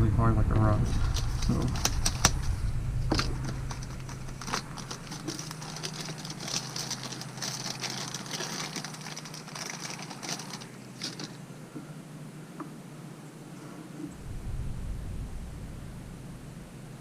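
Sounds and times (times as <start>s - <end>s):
faint low hum: 0.0s - 17.0s
small parts clicking and tapping: 1.1s - 2.5s, 3.1s - 11.4s.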